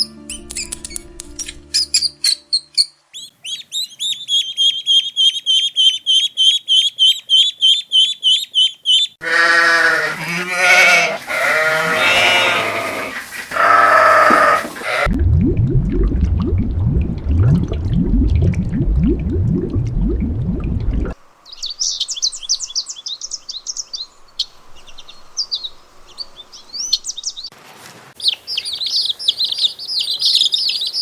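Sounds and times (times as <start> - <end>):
rapid high chirps: 3.3 - 9.2
livestock bleating: 9.2 - 15.1.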